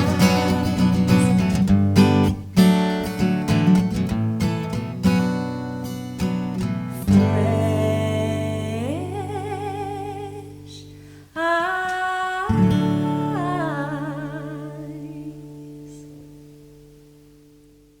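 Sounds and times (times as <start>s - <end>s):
acoustic guitar chords: 0.0s - 18.0s.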